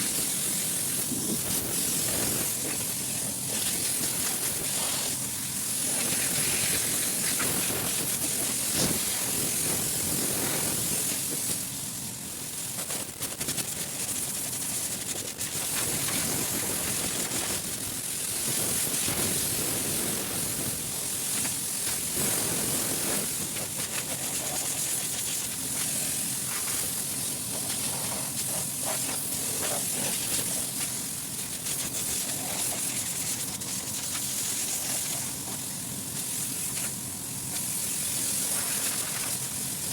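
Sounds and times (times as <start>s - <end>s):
compressed air hissing: 0.0s - 13.0s, 15.8s - 39.9s.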